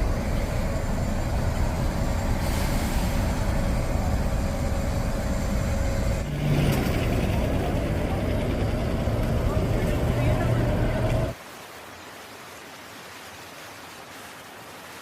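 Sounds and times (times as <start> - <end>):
car road and engine rumble: 0.0 - 11.4.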